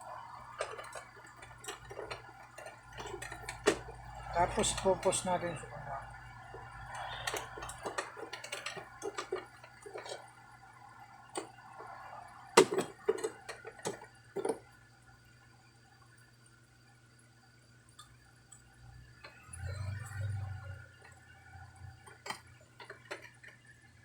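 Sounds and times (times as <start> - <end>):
plastic parts clicking and knocking: 0.2 - 10.4, 11.2 - 14.8, 21.8 - 23.6.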